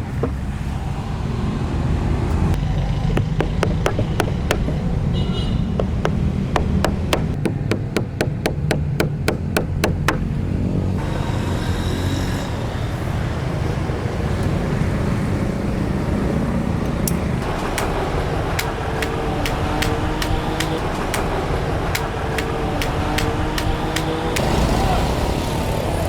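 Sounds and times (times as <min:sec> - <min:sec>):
fast sharp clicks: 0:17.4 - 0:24.6.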